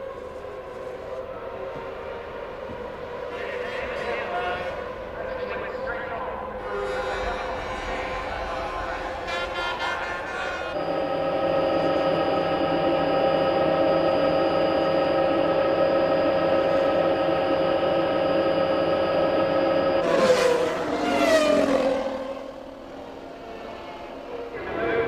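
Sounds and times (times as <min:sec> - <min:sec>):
racing car engine high-pitched note: 0:10.7 - 0:24.6.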